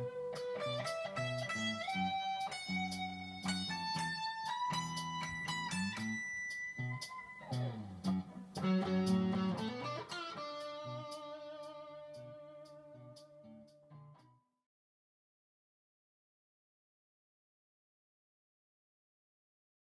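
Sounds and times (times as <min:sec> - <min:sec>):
electric guitar chord ringing: 0:00.0 - 0:14.1
electric guitar notes: 0:00.0 - 0:14.2.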